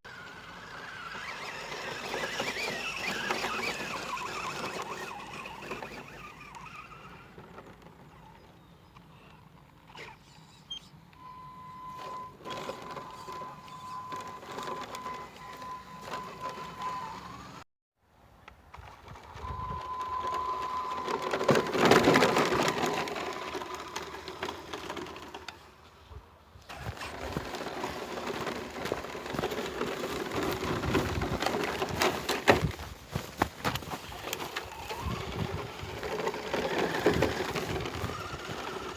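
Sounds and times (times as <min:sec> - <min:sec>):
tyres crunching on rough ground: 0:00.1 - 0:08.7, 0:19.0 - 0:25.7, 0:26.6 - 0:38.9
electric motor whine: 0:11.3 - 0:17.6, 0:34.1 - 0:38.9.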